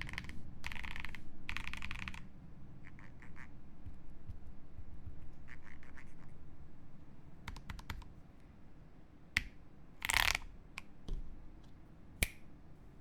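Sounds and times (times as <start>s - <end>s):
mechanical keyboard keystrokes: 0.0s - 2.3s, 7.5s - 8.1s.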